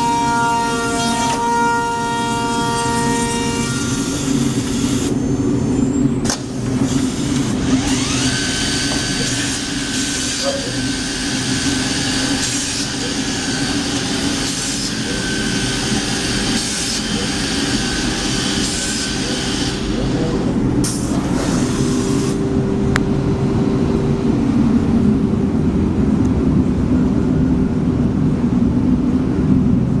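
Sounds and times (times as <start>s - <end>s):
machine humming: 0.0s - 28.8s
router cutting wood hiss: 6.2s - 25.5s.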